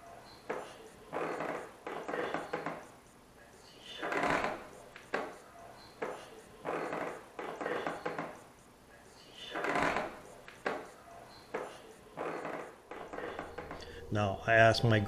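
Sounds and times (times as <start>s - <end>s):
wooden stairs creaking: 12.2s - 14.3s.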